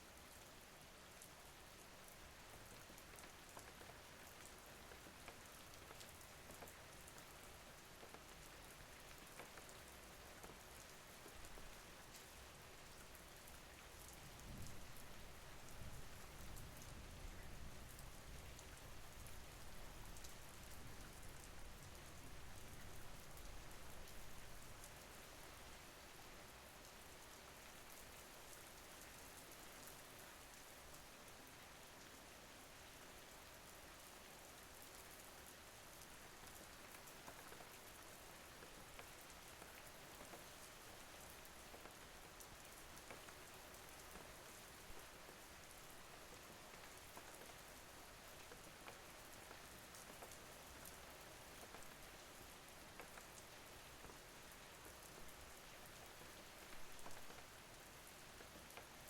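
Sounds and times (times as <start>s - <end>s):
quiet rainfall: 0.0s - 59.0s
raindrops ticking: 56.2s - 57.6s.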